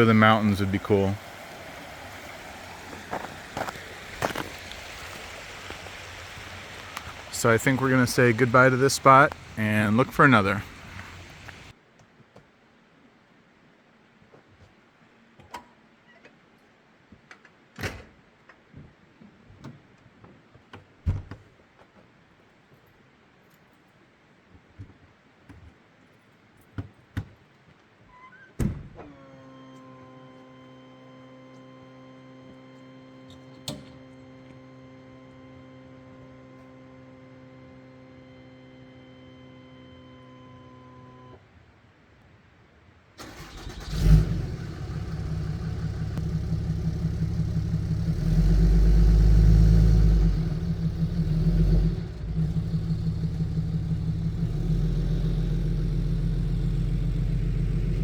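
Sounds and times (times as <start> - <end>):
truck engine cranking and running: 7.1 - 11.7, 43.2 - 58.0
door thumping shut: 28.6 - 29.0.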